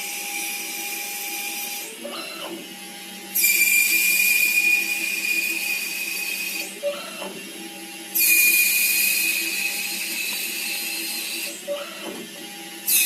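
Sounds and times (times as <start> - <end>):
lathe cutting whine: 0.0 - 13.0
lathe motor hum: 7.6 - 12.9.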